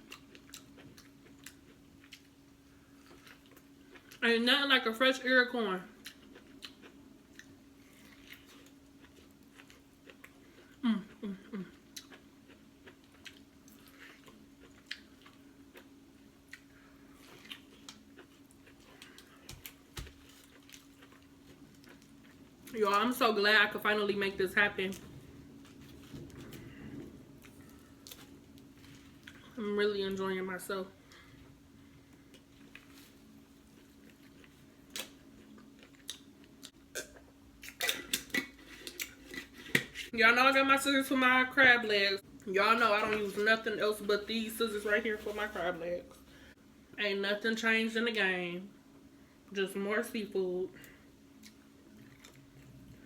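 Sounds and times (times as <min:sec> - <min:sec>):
person chewing food: 0:00.0 - 0:04.2, 0:06.0 - 0:22.8, 0:24.9 - 0:29.6, 0:31.0 - 0:40.1, 0:51.3 - 0:53.0
faint steady hum: 0:00.0 - 0:53.0.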